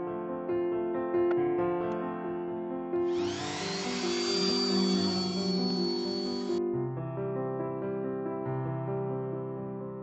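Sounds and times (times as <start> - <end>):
piano music: 0.0 - 10.0
power tool whine: 3.1 - 6.6.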